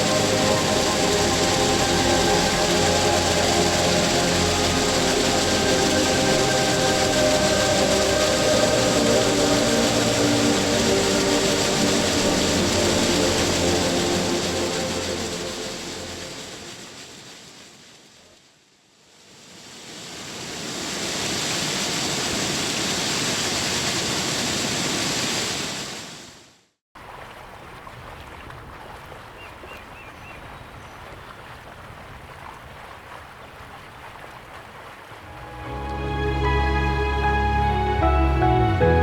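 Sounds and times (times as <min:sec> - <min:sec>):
waterfall rushing: 0:00.0 - 0:17.8.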